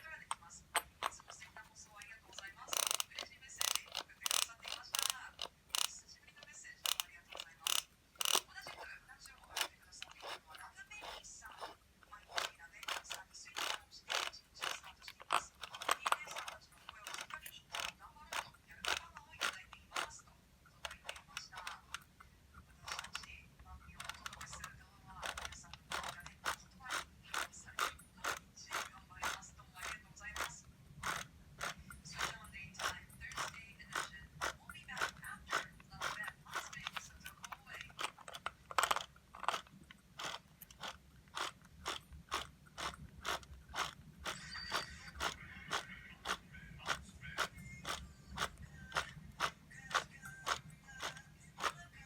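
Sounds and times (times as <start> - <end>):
small mechanism clicking: 0.0 - 20.2, 20.8 - 51.8
clicks and knocks of parts handled: 0.2 - 5.9.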